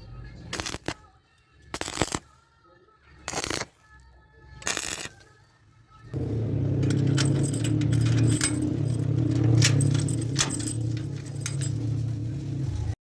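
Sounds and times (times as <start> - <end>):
metallic jingling and clicking: 6.2 - 12.9
steady low hum: 6.2 - 12.9.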